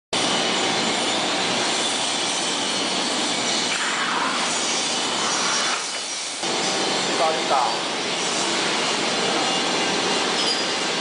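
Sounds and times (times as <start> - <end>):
machine hissing: 1.6 - 9.8.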